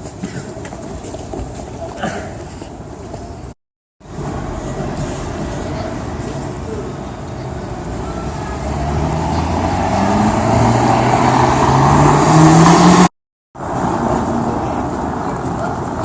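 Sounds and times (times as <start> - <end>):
engine accelerating: 8.5 - 15.2.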